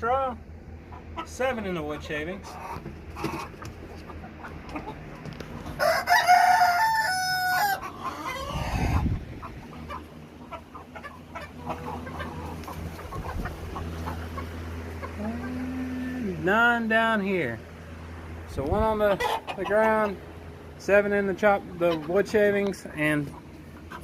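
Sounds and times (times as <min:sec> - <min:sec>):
hens clucking: 0:00.0 - 0:24.0
rooster crowing: 0:05.8 - 0:09.0.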